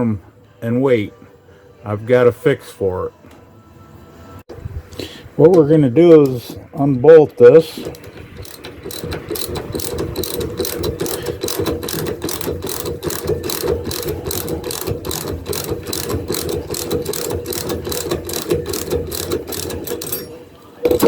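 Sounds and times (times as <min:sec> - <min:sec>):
ratchet wrench clicking: 0:07.6 - 0:20.3.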